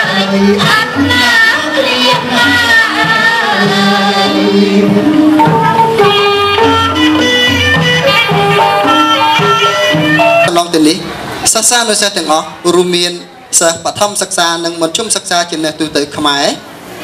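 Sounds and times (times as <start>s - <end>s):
hand drum rhythm: 0.0s - 10.6s.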